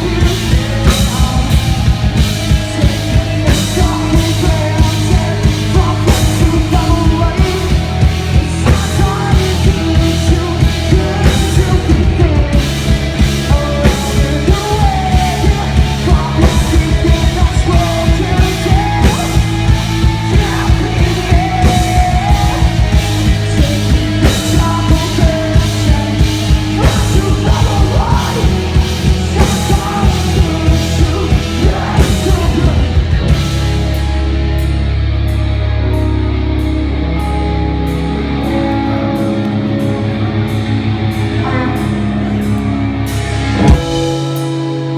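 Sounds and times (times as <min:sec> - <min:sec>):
person singing and shouting: 0:00.0 - 0:33.4
pounding drums: 0:00.0 - 0:33.9
rock band playing: 0:00.0 - 0:44.9.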